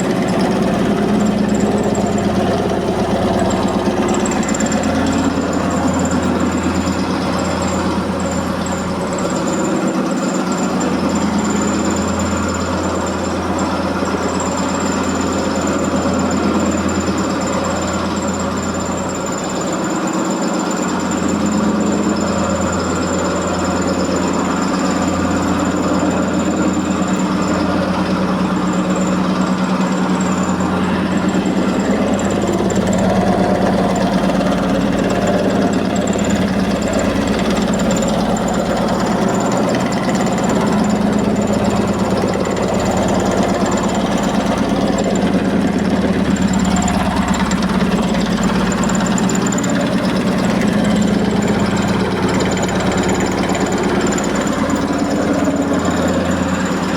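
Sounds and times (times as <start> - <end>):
washing machine motor hum: 0.0 - 56.9.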